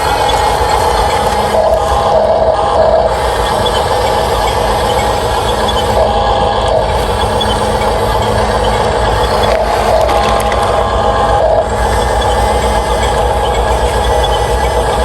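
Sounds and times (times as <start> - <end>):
small electric motors whirring: 3.1 - 15.0.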